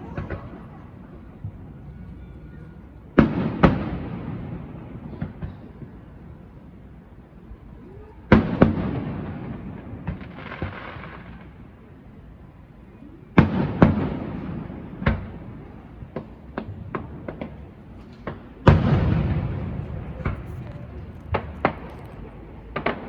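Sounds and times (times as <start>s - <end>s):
fireworks booming: 13.4s - 23.0s
small sharp firework cracks: 16.0s - 23.0s.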